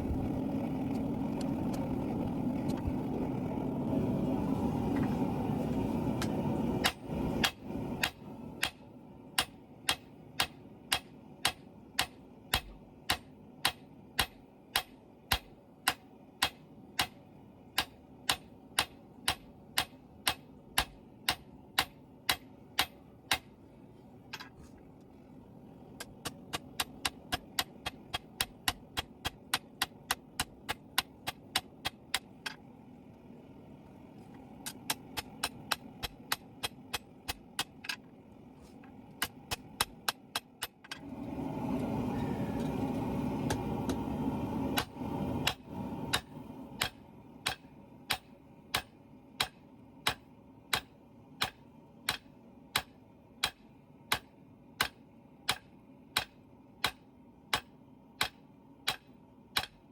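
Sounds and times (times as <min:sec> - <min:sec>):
hammer striking hot steel on anvil: 0:06.2 - 0:23.6, 0:26.0 - 0:32.6, 0:34.6 - 0:38.0, 0:39.2 - 0:41.0, 0:44.8 - 0:59.9.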